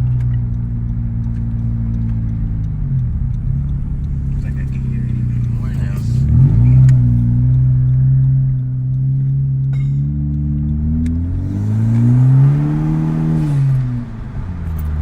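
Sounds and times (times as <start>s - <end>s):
car engine revving: 0.0s - 15.0s.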